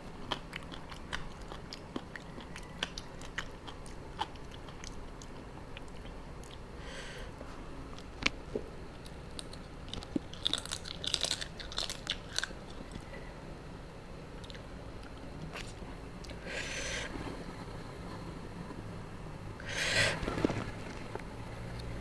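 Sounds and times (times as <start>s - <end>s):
person biting and chewing: 0.2s - 6.7s, 8.0s - 13.1s
crisp crunches: 9.4s - 13.1s.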